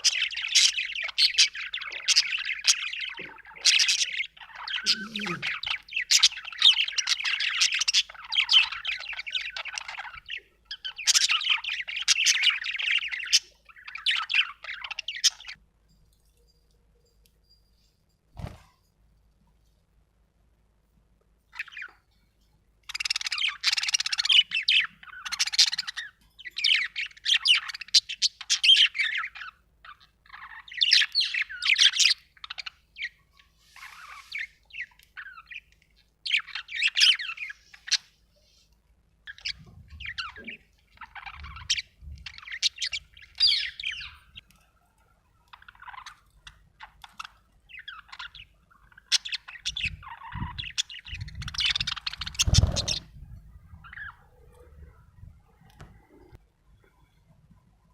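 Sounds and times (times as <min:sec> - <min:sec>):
budgerigar chirping and chattering: 0:00.0 - 0:15.6, 0:22.9 - 0:33.2, 0:39.3 - 0:44.4, 0:45.5 - 0:53.1.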